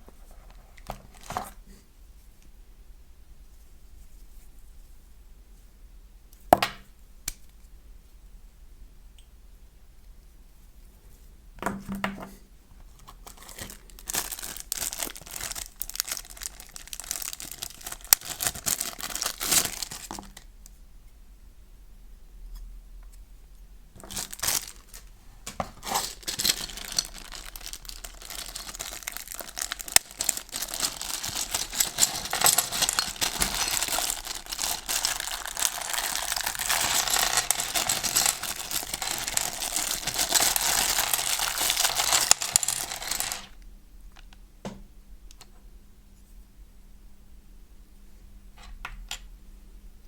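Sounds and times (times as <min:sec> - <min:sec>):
plastic packaging crinkling: 0:00.7 - 0:01.6, 0:13.1 - 0:20.5, 0:24.0 - 0:43.6.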